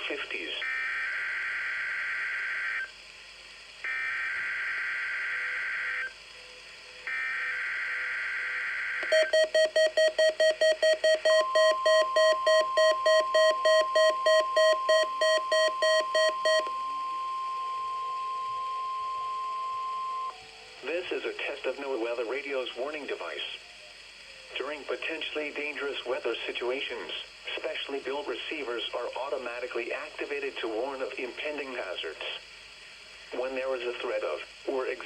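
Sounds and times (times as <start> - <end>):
steady warning alarm tone: 8.6 - 20.4
rapid alarm beeps: 9.0 - 20.3.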